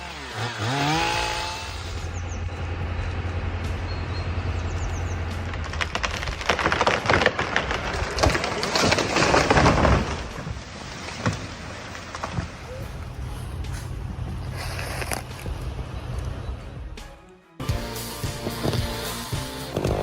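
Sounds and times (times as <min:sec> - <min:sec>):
motor low hum: 0:00.6 - 0:05.8, 0:12.3 - 0:17.0
tree cracking and falling: 0:04.9 - 0:15.9.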